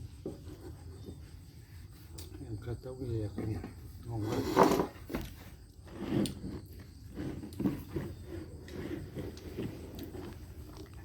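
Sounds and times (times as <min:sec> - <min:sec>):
person chewing food: 0:09.3 - 0:11.0.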